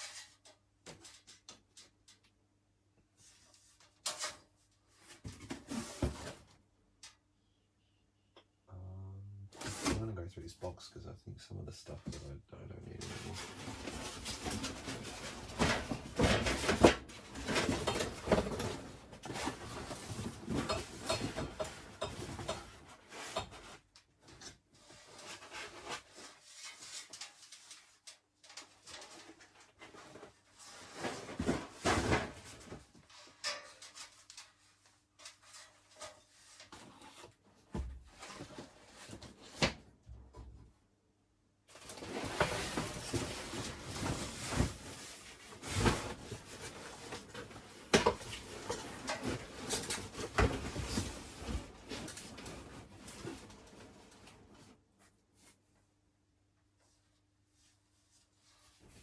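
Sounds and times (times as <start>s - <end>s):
rummaging through a box: 13.0s - 39.8s, 41.7s - 54.7s.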